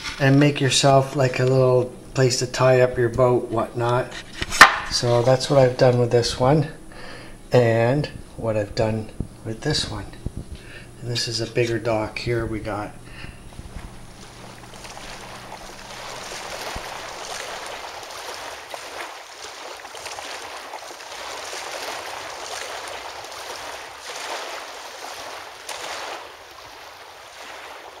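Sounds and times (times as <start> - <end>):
water rushing and lapping: 0.0 - 28.0.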